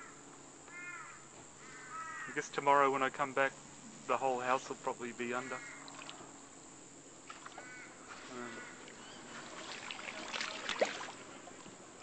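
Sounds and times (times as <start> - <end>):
crow cawing: 0.0 - 2.4, 5.5 - 6.0, 7.5 - 9.2.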